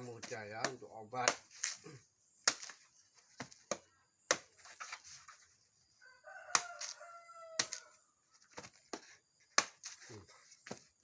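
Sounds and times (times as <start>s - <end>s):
rooster crowing: 6.0s - 8.1s.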